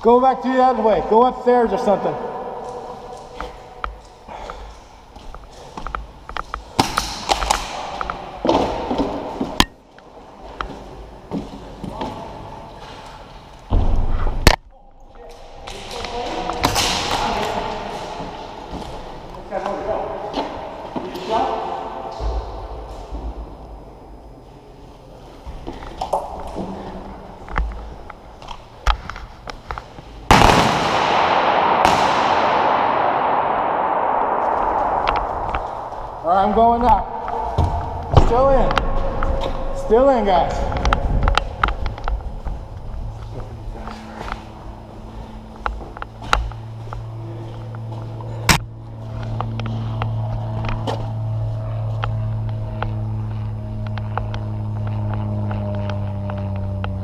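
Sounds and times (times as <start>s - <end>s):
steady low hum: 0.0s - 57.0s
loud steady hissing rush: 15.2s - 57.0s
airsoft gun shots: 30.3s - 36.1s.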